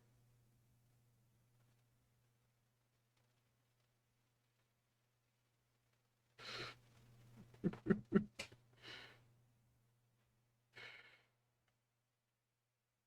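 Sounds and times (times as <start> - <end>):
low electrical hum: 0.0 - 11.7
person chuckling softly: 7.4 - 9.1
breathy exhalations: 10.8 - 11.3.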